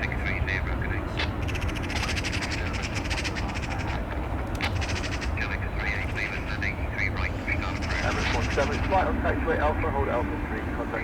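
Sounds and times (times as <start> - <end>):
steady low rumble: 5.3 - 11.0.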